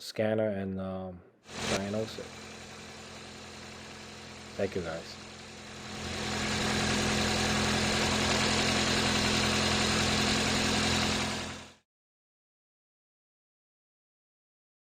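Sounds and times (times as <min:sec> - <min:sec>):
car engine idling: 0:01.5 - 0:11.8.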